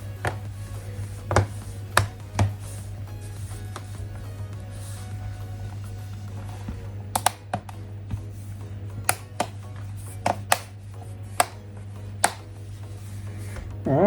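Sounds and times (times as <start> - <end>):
quiet background music: 0.0 - 14.0
plastic parts clicking and snapping: 7.1 - 7.8, 10.2 - 11.6, 12.2 - 12.5.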